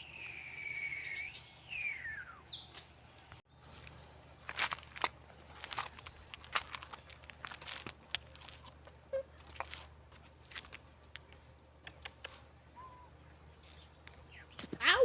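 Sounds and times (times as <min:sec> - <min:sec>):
crackling and rustling: 0:02.7 - 0:12.5.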